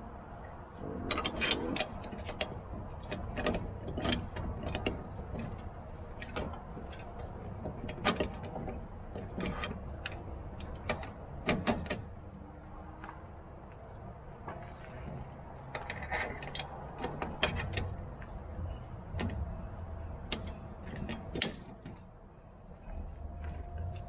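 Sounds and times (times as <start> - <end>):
metal bracket clicking and clanking: 1.0 - 12.1, 15.0 - 22.1.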